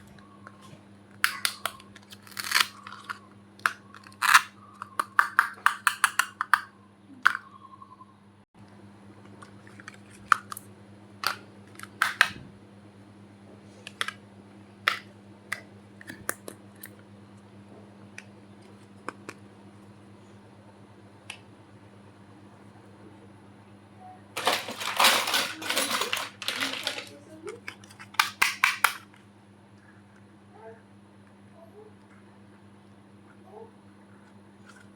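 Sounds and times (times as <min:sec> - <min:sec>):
faint steady hum: 0:00.0 - 0:34.9
plastic toy pieces clicking: 0:01.2 - 0:06.7, 0:24.4 - 0:27.1.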